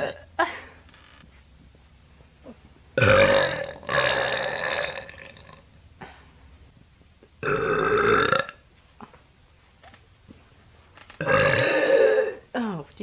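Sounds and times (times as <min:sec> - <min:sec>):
woman burping loudly: 0:00.0 - 0:00.5, 0:03.0 - 0:05.6, 0:07.4 - 0:08.6, 0:11.2 - 0:12.5.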